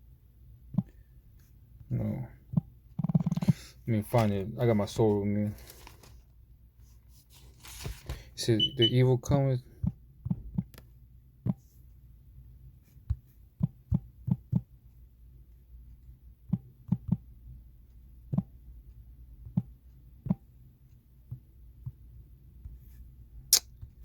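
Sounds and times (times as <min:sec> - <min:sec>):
soft taps and thumps of handling: 0:21.2 - 0:23.0.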